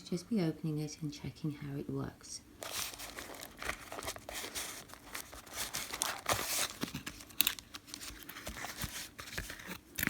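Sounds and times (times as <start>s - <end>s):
packaging crackle: 2.6s - 10.0s
packaging crinkling and tearing: 2.6s - 10.0s.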